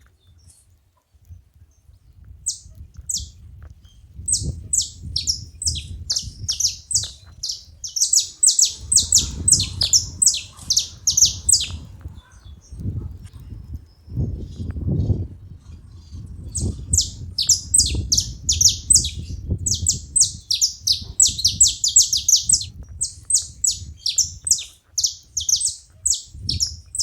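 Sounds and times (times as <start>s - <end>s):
finches calling: 4.3s - 11.9s, 16.6s - 27.0s.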